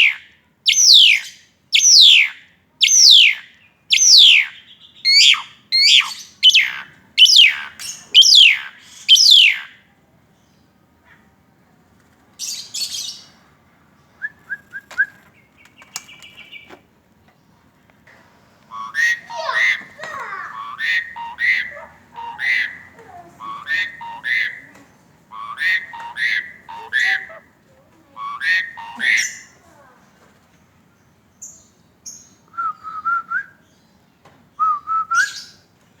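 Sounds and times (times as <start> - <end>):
starling whistles and chattering: 0.0 - 9.7, 18.7 - 27.4, 28.2 - 29.6.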